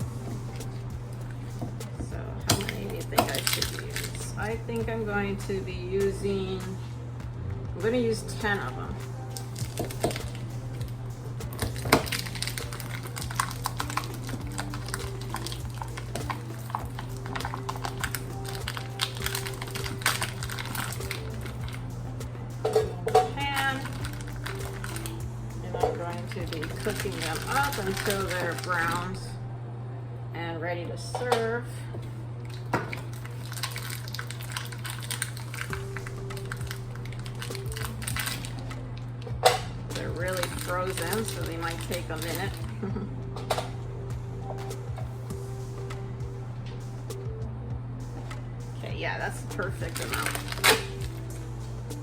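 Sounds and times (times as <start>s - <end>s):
soft background music: 0.0s - 52.0s
steady low hum: 0.0s - 52.0s
sausages crackling in a skillet: 2.5s - 4.6s, 9.3s - 29.0s, 32.6s - 38.8s, 39.5s - 42.8s, 49.2s - 52.0s
frozen sausages clattering in tray: 26.1s - 28.8s, 33.2s - 38.6s.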